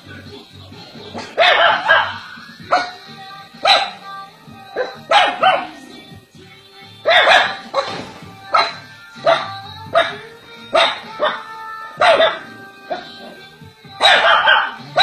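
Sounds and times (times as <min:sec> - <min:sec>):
background music: 0:00.0 - 0:15.0
dog barking: 0:01.2 - 0:03.0, 0:03.6 - 0:04.0, 0:04.8 - 0:05.7, 0:07.0 - 0:07.9, 0:08.5 - 0:13.4, 0:14.0 - 0:15.0.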